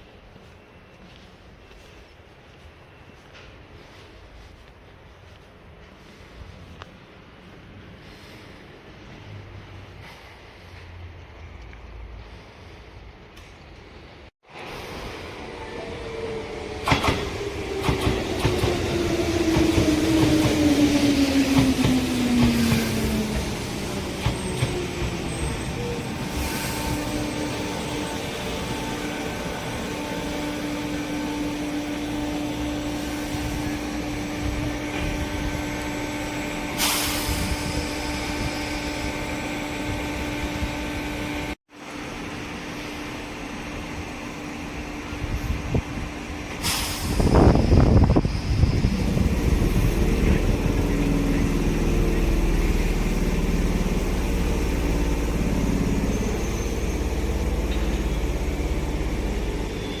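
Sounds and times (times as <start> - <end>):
low rumble of train running: 0.0 - 60.0
steady train hum: 0.0 - 60.0
air brake hisses: 36.7 - 38.6, 46.6 - 49.9.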